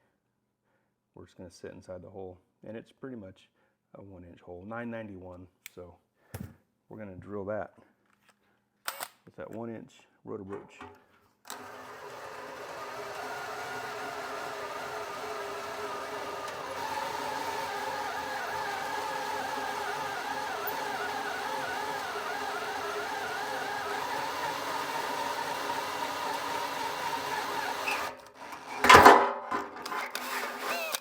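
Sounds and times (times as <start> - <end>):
electric drill motor whine: 11.5 - 29.0, 30.1 - 31.0.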